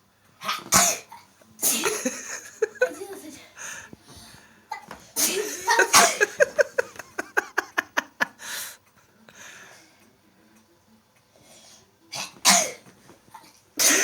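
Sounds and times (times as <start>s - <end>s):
person laughing: 1.9s - 3.2s, 5.4s - 8.7s
person sneezing: 5.2s - 6.4s, 13.8s - 14.0s.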